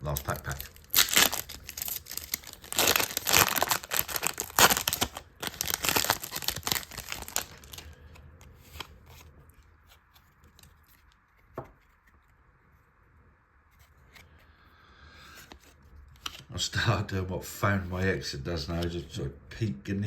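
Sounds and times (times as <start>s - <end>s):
foil wrapper tearing and crinkling: 0.0s - 8.0s.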